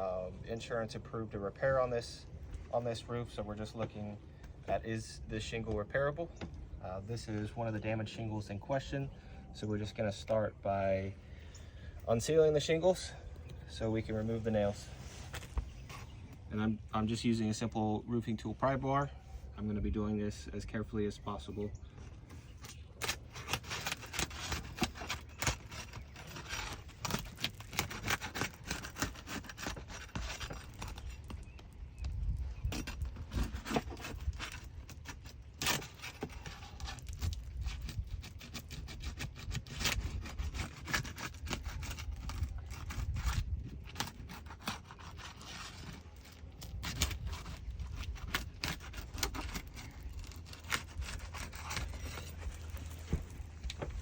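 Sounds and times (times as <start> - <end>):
low wind rumble: 19.1 - 54.0
pry bar scraping shingles: 22.2 - 54.0.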